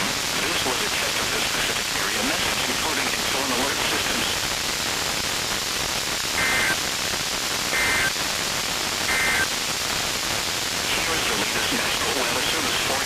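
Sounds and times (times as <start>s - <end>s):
radio static hiss: 0.0s - 13.0s
short two-tone data bursts: 6.4s - 6.8s, 7.7s - 8.2s, 9.1s - 9.5s.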